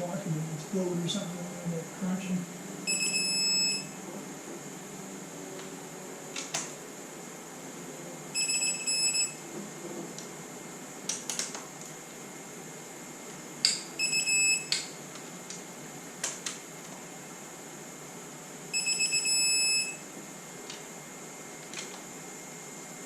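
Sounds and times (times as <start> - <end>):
torque wrench rapid beeps: 2.9 - 3.9, 8.4 - 9.4, 18.8 - 20.0.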